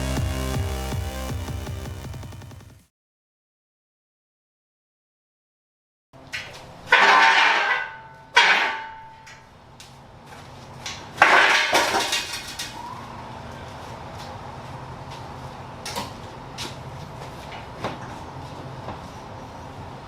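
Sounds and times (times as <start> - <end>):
steady low hum: 0.0 - 2.3
metal tools clattering: 6.9 - 9.4.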